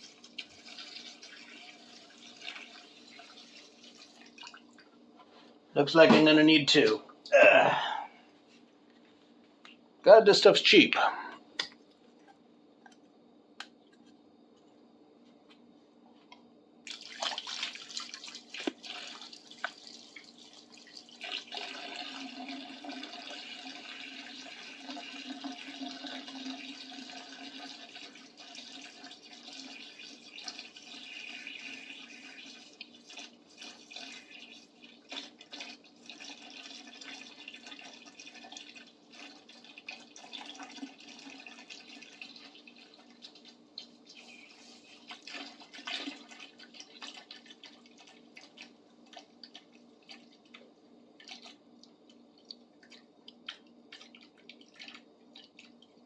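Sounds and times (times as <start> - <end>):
liquid pouring into bucket: 0.0 - 5.0, 16.8 - 56.0.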